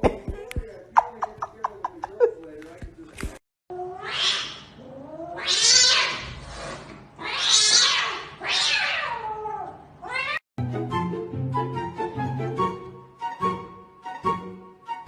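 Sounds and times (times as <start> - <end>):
cat yowling: 3.7 - 6.3, 7.2 - 10.4.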